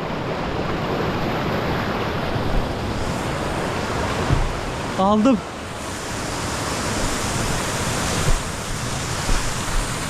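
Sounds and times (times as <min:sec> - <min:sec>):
waterfall rushing: 0:00.0 - 0:10.0
low bump: 0:04.2 - 0:04.8.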